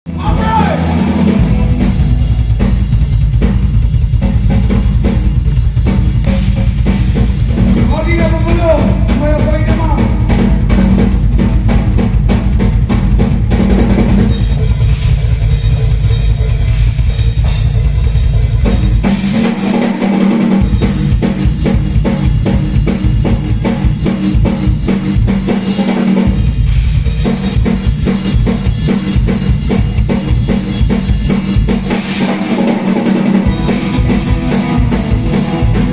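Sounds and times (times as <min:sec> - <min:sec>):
bass line: 0:00.1 - 0:19.8, 0:20.4 - 0:35.9
live band playing: 0:00.1 - 0:35.9
drum kit kick and snare hits: 0:00.2 - 0:35.9.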